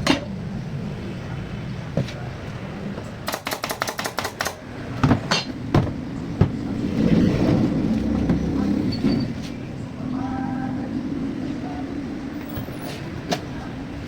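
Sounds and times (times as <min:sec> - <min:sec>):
sharp clicks: 0:03.3 - 0:04.6
knocks: 0:05.0 - 0:06.6.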